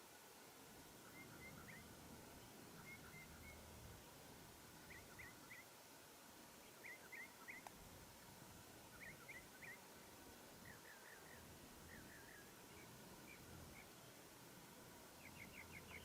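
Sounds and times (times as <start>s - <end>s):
faint bird chirping: 0.6s - 5.9s, 6.5s - 16.0s
faint click: 7.5s - 7.8s.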